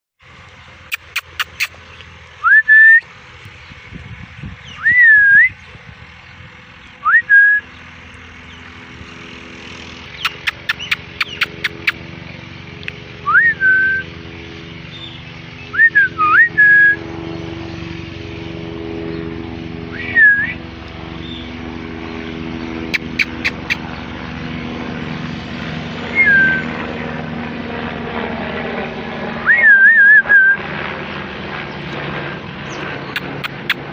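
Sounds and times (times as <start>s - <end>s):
steady hum: 0.4s - 30.7s
parrot whistled calls: 0.9s - 1.8s, 2.4s - 3.0s, 4.6s - 5.6s, 10.2s - 12.0s, 13.2s - 14.1s, 15.7s - 17.0s, 20.0s - 20.6s, 22.9s - 23.8s, 26.1s - 26.7s, 29.4s - 30.6s
sharp clicks: 0.9s - 2.1s, 10.1s - 12.0s, 23.0s - 23.8s, 33.1s - 33.9s.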